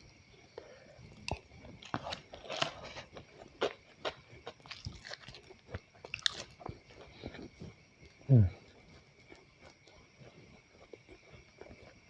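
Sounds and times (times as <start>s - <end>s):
person chewing food: 0.5s - 12.0s.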